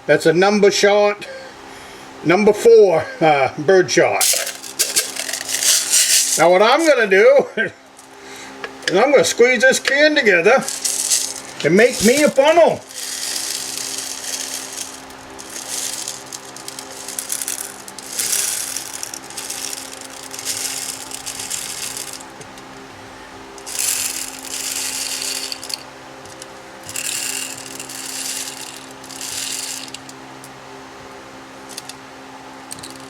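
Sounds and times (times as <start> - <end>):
birdshot pellets rattling into plastic: 4.2 - 6.5, 10.6 - 22.3, 23.6 - 30.2, 32.7 - 33.0.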